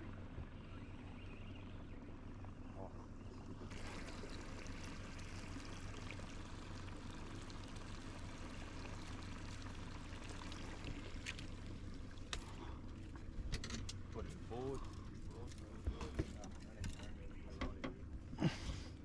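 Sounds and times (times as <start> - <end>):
steady low hum: 0.0 - 19.0
water splashing along boat hull: 3.5 - 18.0.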